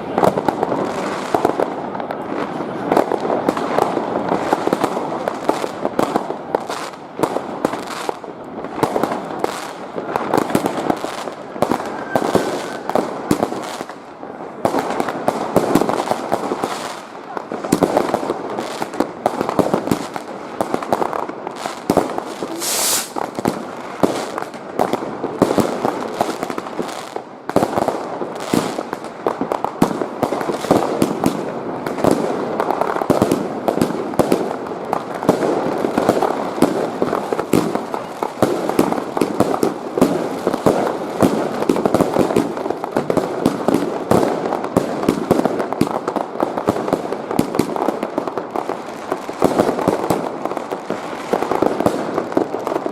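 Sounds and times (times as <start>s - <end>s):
fireworks bangs: 0.0s - 52.9s
brief hiss: 22.5s - 23.2s.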